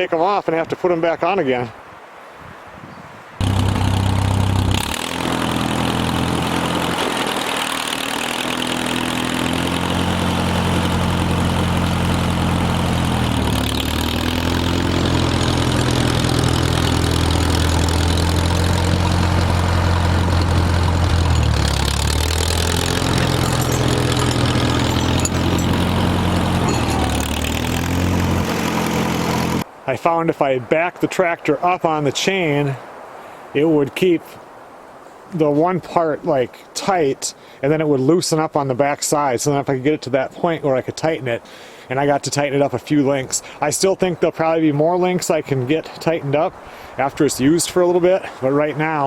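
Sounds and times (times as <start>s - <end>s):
tractor engine running: 3.4s - 29.6s.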